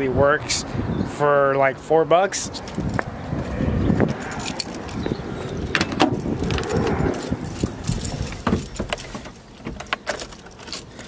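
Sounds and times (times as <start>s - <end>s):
keys jangling: 4.0s - 11.0s.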